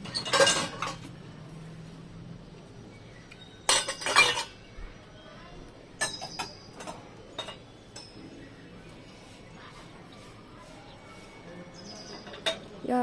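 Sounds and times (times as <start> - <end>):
dishes and utensils clinking: 0.0 - 1.2, 3.6 - 4.7, 6.0 - 8.4, 11.9 - 12.8.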